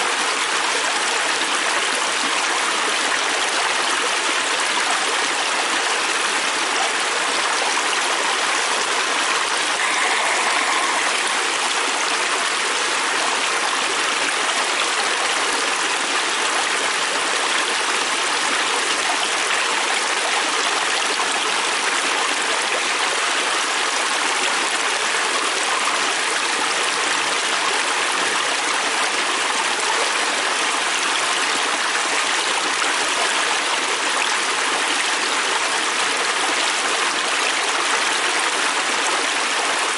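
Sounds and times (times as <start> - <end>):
river rushing over rocks: 6.2 - 14.0.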